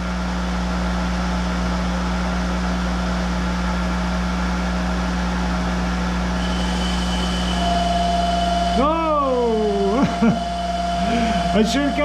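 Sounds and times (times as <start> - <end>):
lathe machine hum: 4.4 - 12.0
hiss: 6.4 - 7.6.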